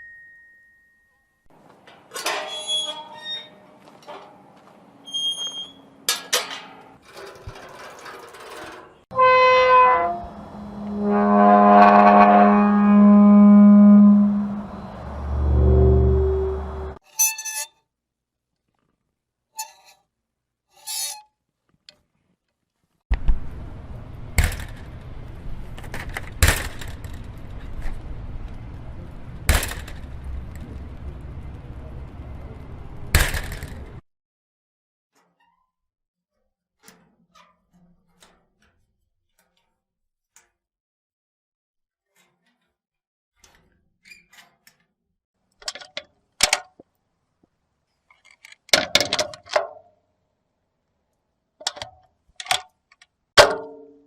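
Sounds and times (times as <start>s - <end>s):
metal gate clanging: 1.8s - 17.4s, 24.2s - 34.0s
low background rumble: 10.0s - 17.0s, 23.1s - 34.0s.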